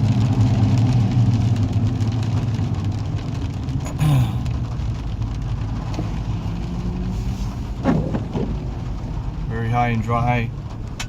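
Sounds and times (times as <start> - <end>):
car engine running: 0.0 - 11.0
road noise: 0.0 - 11.0
car bump: 7.8 - 8.6.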